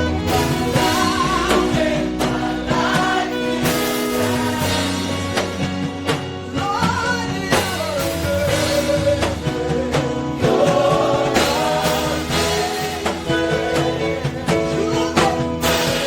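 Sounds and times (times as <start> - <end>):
band chords: 0.0 - 16.0
singers singing gospel: 0.0 - 16.0
steady drum beat: 0.0 - 16.0.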